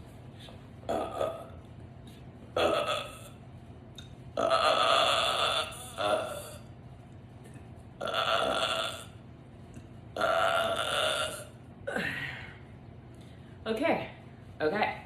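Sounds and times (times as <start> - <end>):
woman burping: 0.9 - 1.6, 2.6 - 3.3, 4.4 - 6.6, 8.0 - 9.2, 10.2 - 12.5.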